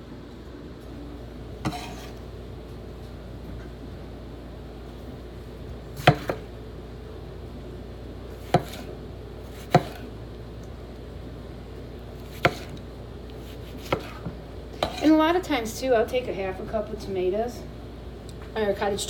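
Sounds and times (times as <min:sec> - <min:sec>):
knife chopping on cutting board: 0:01.6 - 0:02.2, 0:06.0 - 0:06.5, 0:08.4 - 0:08.9, 0:09.5 - 0:10.1, 0:12.2 - 0:12.8, 0:13.4 - 0:15.1.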